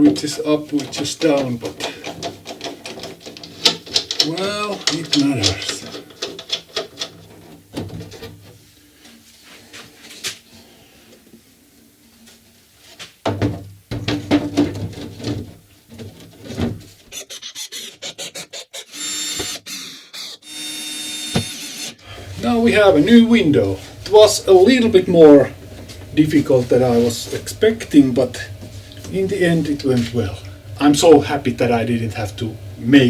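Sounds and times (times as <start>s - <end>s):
cordless screwdriver running: 17.1s - 22.0s.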